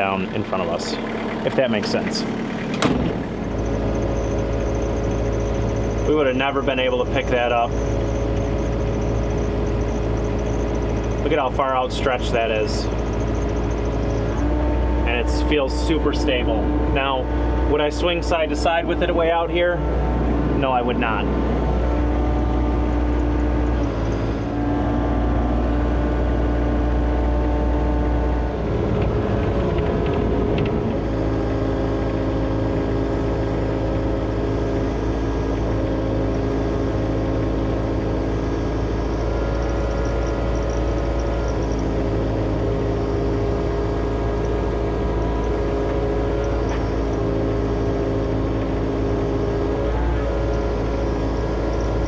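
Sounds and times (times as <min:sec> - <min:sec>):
excavator diesel engine running: 0:00.0 - 0:52.0
short knocks: 0:01.0 - 0:03.6.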